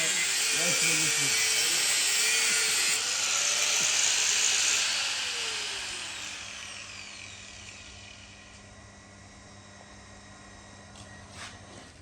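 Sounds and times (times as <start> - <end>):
power tool whine winding down: 0.0 - 11.2.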